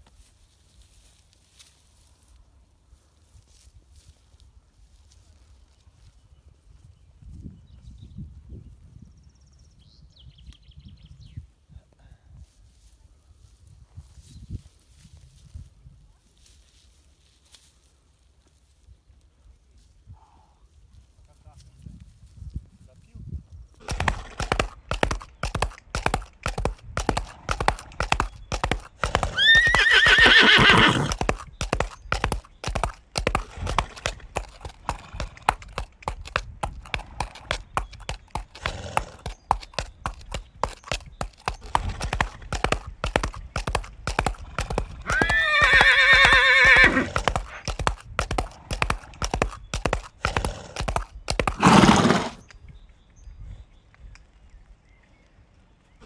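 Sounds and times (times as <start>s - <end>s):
horse whinnying: 23.8s - 52.4s
horse hoofbeats clattering: 23.8s - 52.5s.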